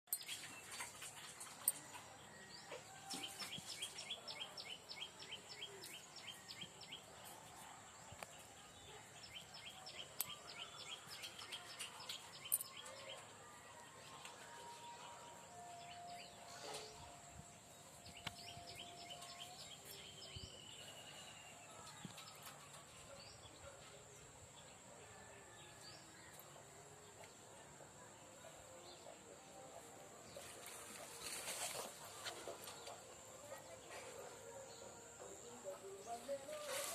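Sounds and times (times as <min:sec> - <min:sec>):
birds singing: 0:15.7 - 0:23.8.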